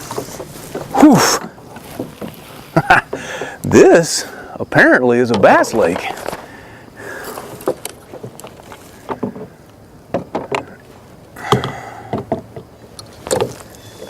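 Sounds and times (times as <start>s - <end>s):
gear knocking on plastic kayak hull: 0.0s - 3.6s, 7.5s - 10.8s, 11.4s - 13.7s.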